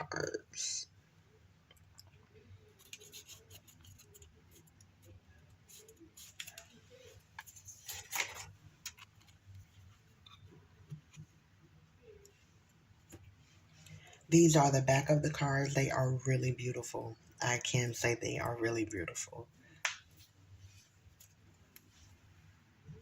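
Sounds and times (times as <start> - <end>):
cards clicking and rustling: 5.8 - 9.4.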